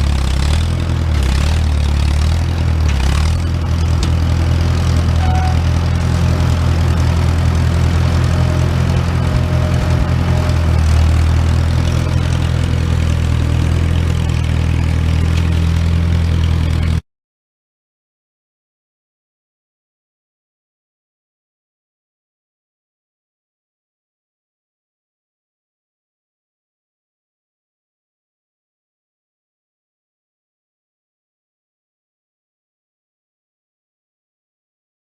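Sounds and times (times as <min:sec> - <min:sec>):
engine idling: 0:00.0 - 0:17.0.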